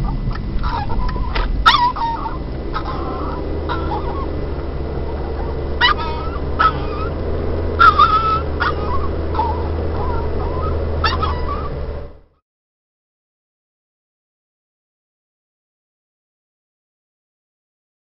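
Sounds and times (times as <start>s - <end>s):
small dog whining and yipping: 0.0s - 12.2s
car rumble: 0.0s - 12.4s.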